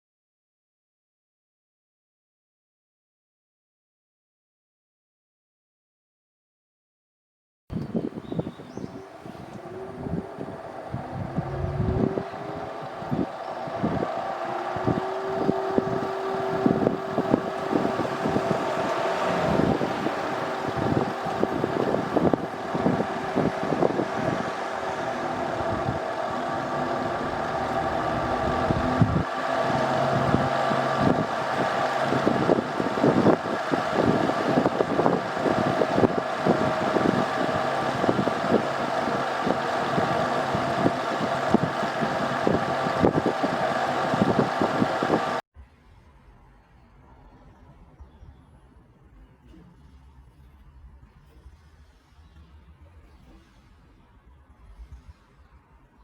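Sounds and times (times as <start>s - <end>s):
fan motor rattling and grinding: 7.7s - 45.4s.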